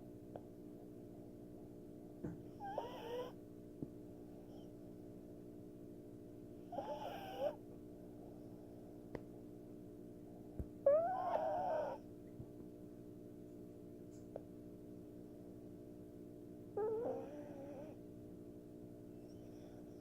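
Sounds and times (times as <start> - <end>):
steady background hum: 0.0 - 20.0
dog snoring: 2.5 - 3.4, 6.6 - 7.6, 10.9 - 12.0, 16.8 - 18.0.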